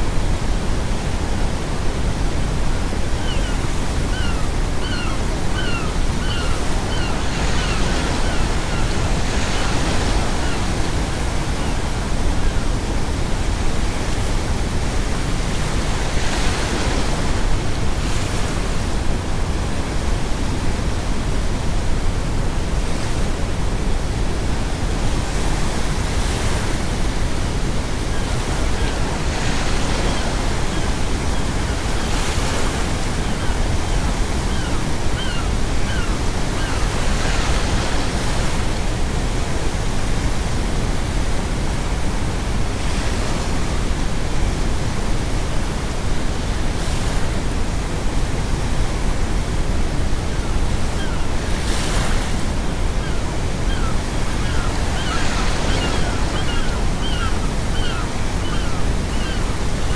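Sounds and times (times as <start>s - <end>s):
ocean waves breaking on shore: 0.0s - 59.9s
seagull calls: 3.2s - 10.8s, 28.1s - 37.4s, 53.0s - 59.9s.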